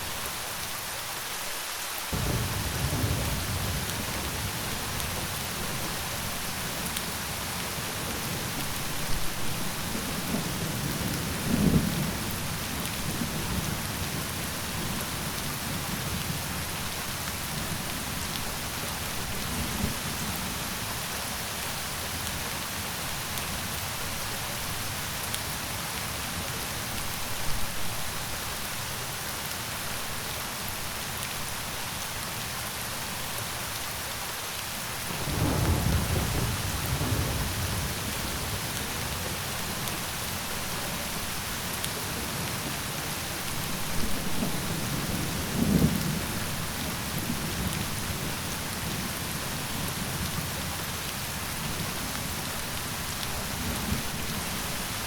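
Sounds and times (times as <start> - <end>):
heavy rain falling: 0.0 - 55.0
thunder rumbling: 2.2 - 9.3, 35.1 - 39.8.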